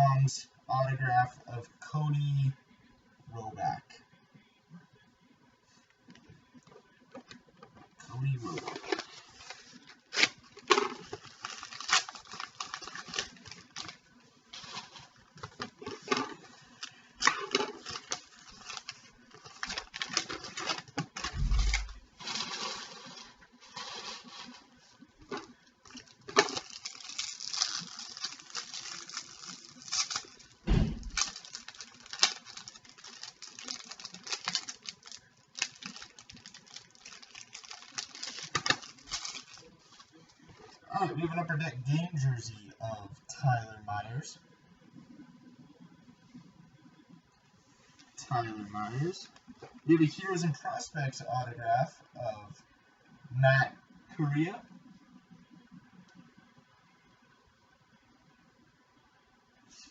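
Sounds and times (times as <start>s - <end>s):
wrapper crinkling: 8.4s - 40.8s.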